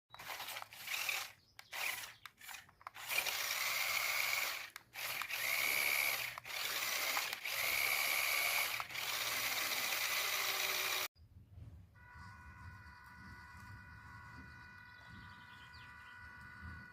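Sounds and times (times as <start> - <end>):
toy truck motor whining and grinding: 0.1 - 11.1
faint steady tones: 11.9 - 16.9.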